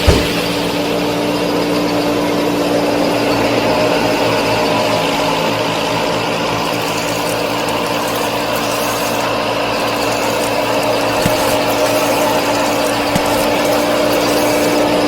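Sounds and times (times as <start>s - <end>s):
small motor running steadily: 6.2s - 15.0s.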